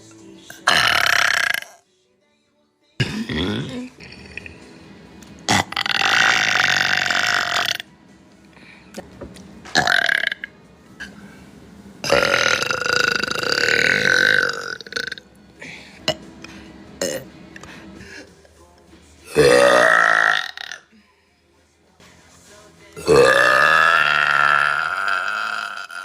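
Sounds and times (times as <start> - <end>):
girl burping: 0.7 - 1.8, 3.0 - 4.5, 5.5 - 7.8, 12.0 - 15.2, 19.4 - 20.9, 23.0 - 26.0.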